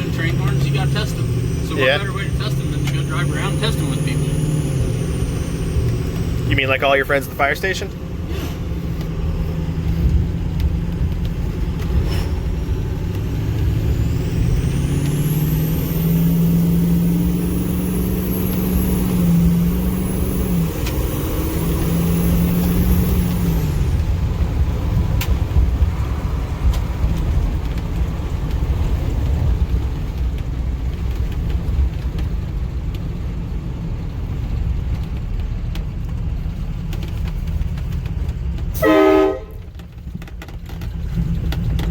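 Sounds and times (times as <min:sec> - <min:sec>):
pickup truck engine rumbling: 0:00.0 - 0:41.9.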